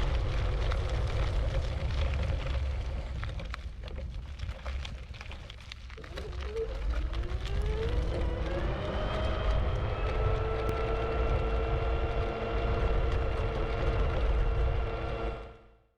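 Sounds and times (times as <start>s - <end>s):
low rumble: 0.0s - 15.8s
electric scooter motor whining: 6.0s - 15.7s.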